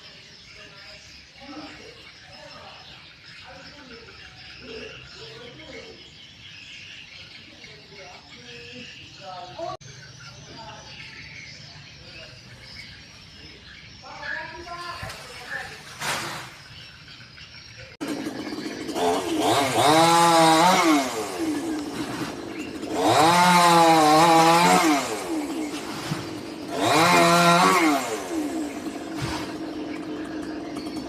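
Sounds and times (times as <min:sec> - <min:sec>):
chainsaw idling and revving: 0:18.0 - 0:31.0.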